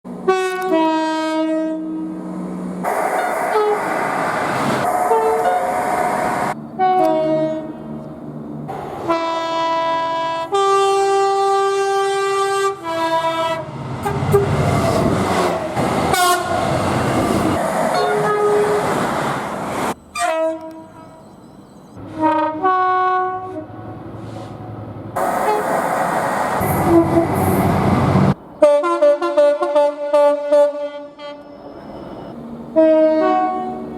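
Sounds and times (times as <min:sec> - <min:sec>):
trains rumbling past: 0:00.1 - 0:33.9
train horn blasts: 0:00.2 - 0:02.2, 0:06.8 - 0:07.8, 0:09.0 - 0:14.6, 0:15.4 - 0:16.6, 0:17.9 - 0:18.8, 0:20.1 - 0:21.2, 0:22.0 - 0:24.5, 0:26.8 - 0:27.5, 0:28.6 - 0:31.6, 0:32.7 - 0:33.9.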